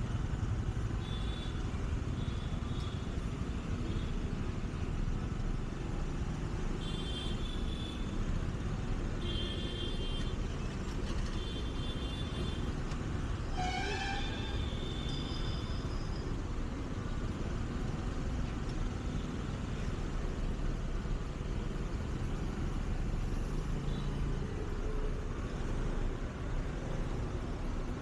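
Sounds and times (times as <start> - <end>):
wind and road noise: 0.0 - 28.0
vehicle horns honking: 13.4 - 15.8.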